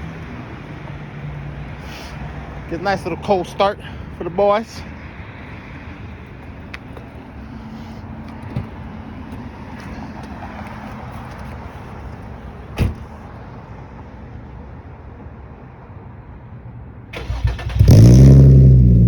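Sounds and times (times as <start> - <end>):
outdoor background noise: 0.0 - 19.0
car door shutting: 12.7 - 13.2.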